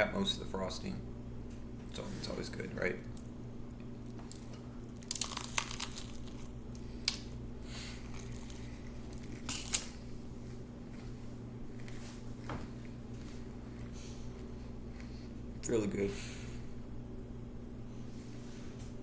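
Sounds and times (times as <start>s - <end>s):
steady low hum: 0.0s - 19.0s
crunchy food being chewed: 3.0s - 15.5s.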